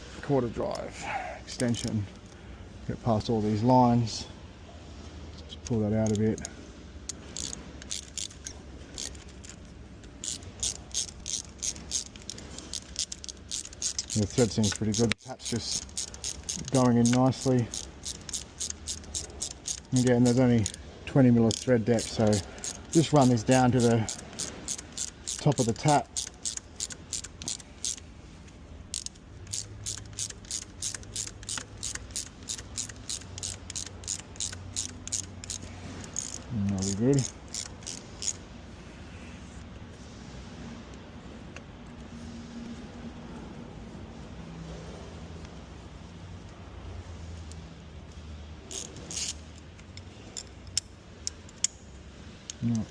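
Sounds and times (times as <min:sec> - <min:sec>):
ratchet clicking: 0:01.5 - 0:02.4, 0:05.6 - 0:28.1, 0:28.9 - 0:38.4, 0:47.4 - 0:52.8.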